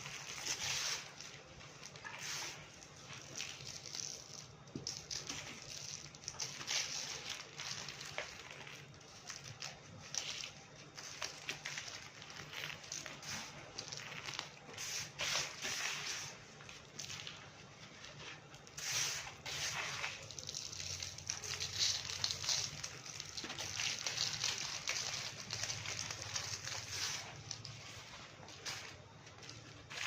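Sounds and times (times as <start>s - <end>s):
dry clay crumbling: 0.0s - 30.0s.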